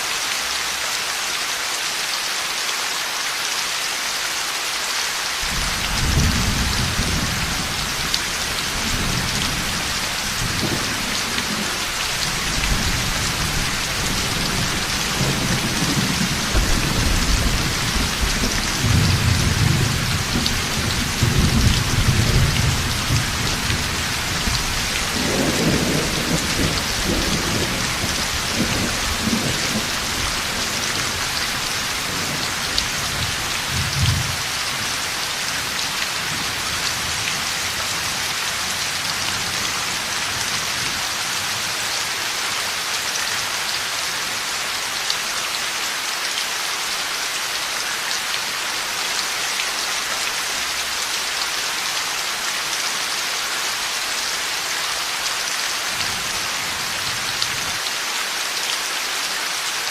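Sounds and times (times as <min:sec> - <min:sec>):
heavy rain: 0:00.0 - 0:59.9
rolling thunder: 0:05.5 - 0:07.9.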